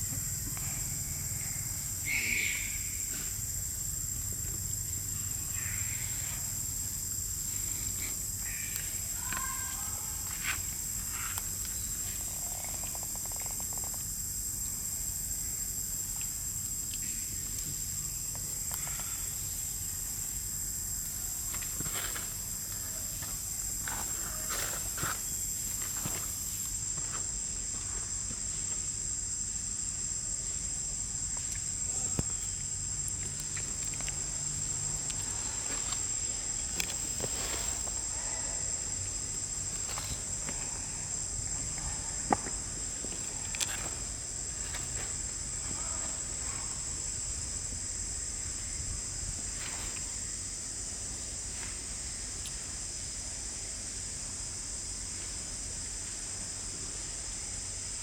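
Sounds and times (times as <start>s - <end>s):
high-pitched insect chorus: 0.0s - 58.0s.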